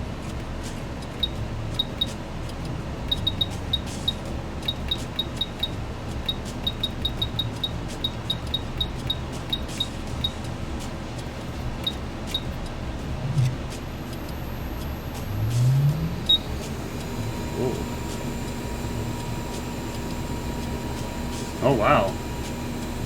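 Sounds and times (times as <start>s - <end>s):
whirring fan hum: 0.0s - 23.0s
short high-pitched beeps: 1.2s - 2.2s, 3.1s - 10.4s, 11.8s - 12.6s, 13.2s - 23.0s.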